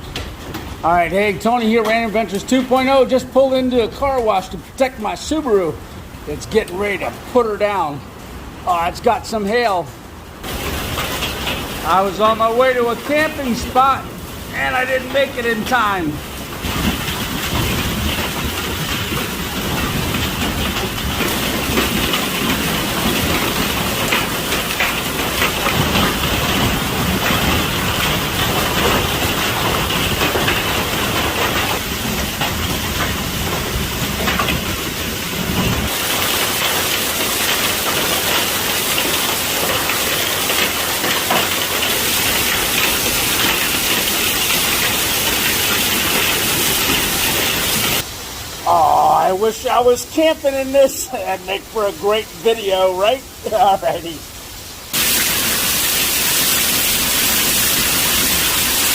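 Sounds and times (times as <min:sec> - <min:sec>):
hailstones rattling on hard surfaces: 0:00.0 - 0:05.1, 0:10.4 - 0:48.1, 0:54.9 - 0:58.9
heavy rain downpour: 0:00.0 - 0:58.9.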